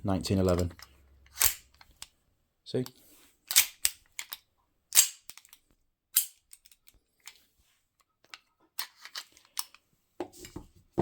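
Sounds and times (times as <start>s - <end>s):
metallic clicks of pistol magazine: 0.8s - 2.1s, 3.5s - 7.4s.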